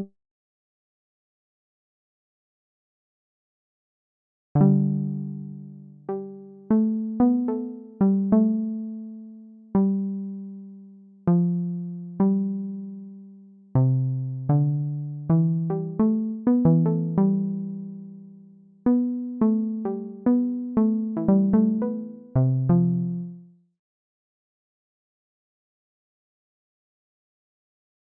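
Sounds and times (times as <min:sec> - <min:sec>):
synthesizer electric piano notes: 0:18.9 - 0:23.2.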